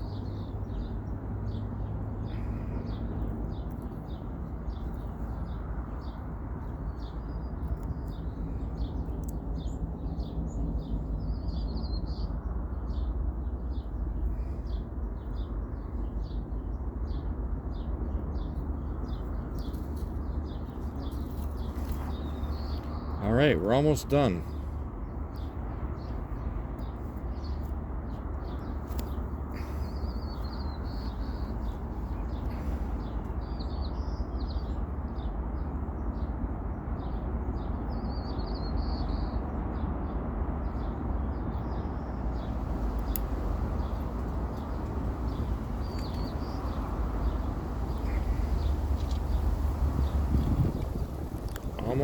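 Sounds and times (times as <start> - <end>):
small songbirds chirping: 0.0 - 52.0
steady low rumble: 41.9 - 52.0
faint clicks: 43.0 - 44.7.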